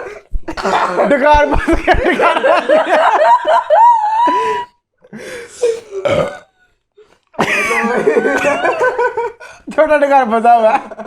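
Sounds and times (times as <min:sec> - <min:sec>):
group of people laughing: 0:00.6 - 0:04.7, 0:07.4 - 0:09.6.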